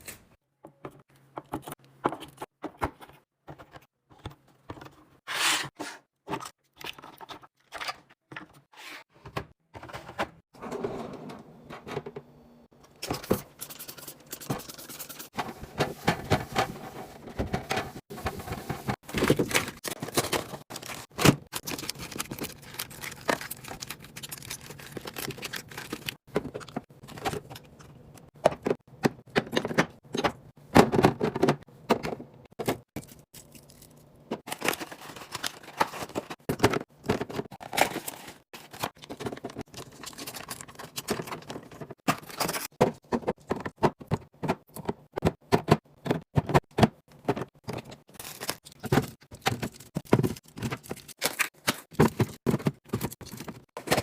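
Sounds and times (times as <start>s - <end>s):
containers being handled: 12.8s - 54.0s.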